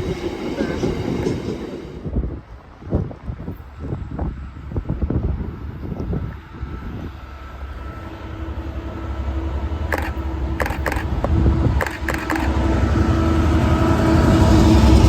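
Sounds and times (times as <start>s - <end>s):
train rumbling: 0.0s - 15.0s
sharp clicks: 9.9s - 12.6s.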